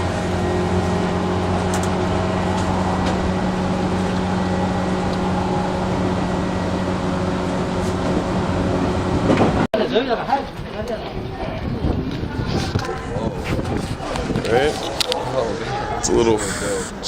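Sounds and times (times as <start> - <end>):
train electric hum and rumble: 0.0 - 9.7.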